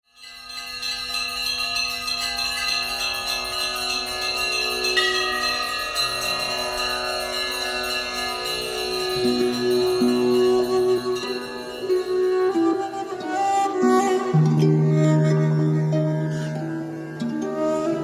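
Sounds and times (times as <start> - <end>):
bells ringing: 0.1 - 14.4.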